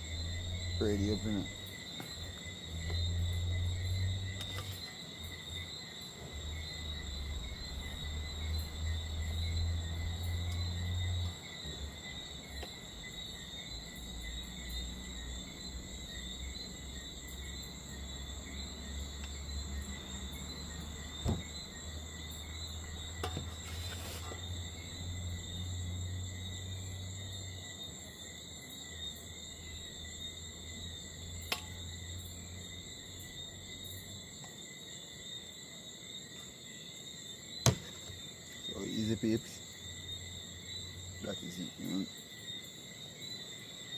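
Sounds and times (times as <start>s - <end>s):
crickets trilling: 0.0s - 43.9s
sharp knocks: 21.2s - 21.6s, 37.6s - 38.2s.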